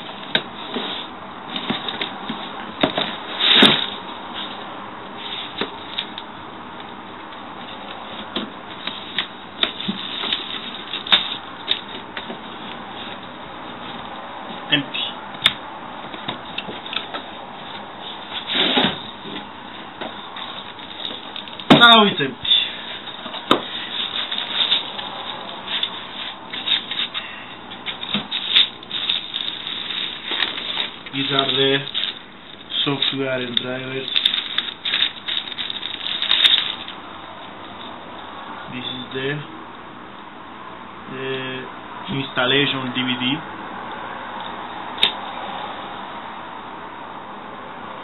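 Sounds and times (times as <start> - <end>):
packaging rustling and clicking: 7.8 - 12.4, 16.2 - 22.0, 23.0 - 37.0.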